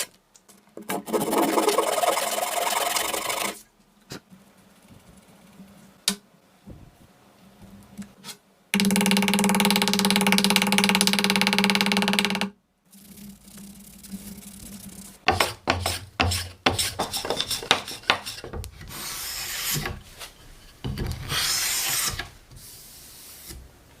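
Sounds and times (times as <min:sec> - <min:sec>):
rasping strokes: 0:12.9 - 0:20.4, 0:21.2 - 0:23.6
scraping and knocking on wood: 0:15.2 - 0:22.6.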